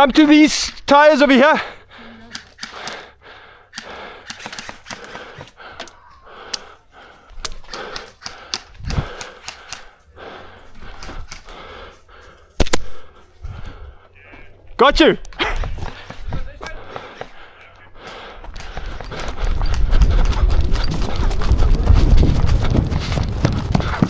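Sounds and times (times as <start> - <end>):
airsoft guns firing clicks: 2.2 - 6.7, 7.4 - 10.0, 10.9 - 11.8, 12.6 - 13.0
rustling movement: 6.4 - 24.0
sharp crack: 12.6 - 13.0.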